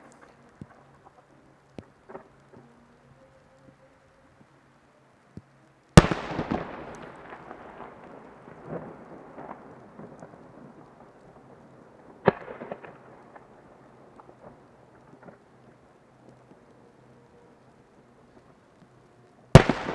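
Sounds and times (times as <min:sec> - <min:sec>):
firework crackles: 0:00.0 - 0:19.9
firework bang: 0:06.0 - 0:11.2, 0:19.5 - 0:19.9
rumbling echo: 0:06.0 - 0:16.6, 0:19.6 - 0:19.9.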